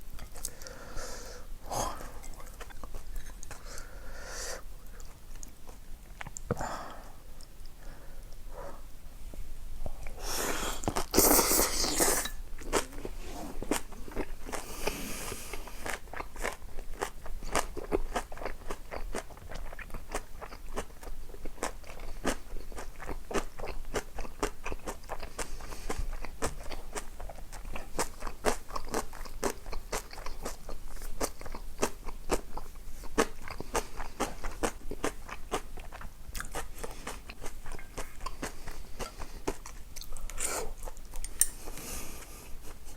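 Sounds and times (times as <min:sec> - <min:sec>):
crunching and chewing crisp food: 0:00.0 - 0:00.8, 0:10.8 - 0:42.4.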